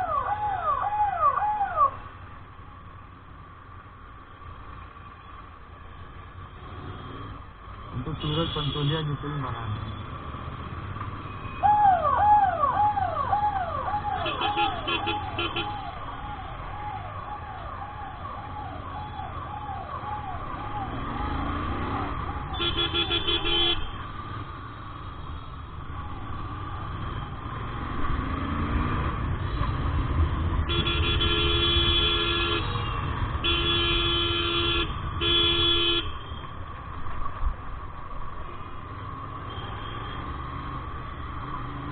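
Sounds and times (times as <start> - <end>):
traffic horns: 8.0 - 9.5, 14.2 - 15.8, 22.5 - 24.1, 30.6 - 36.6, 39.4 - 40.4.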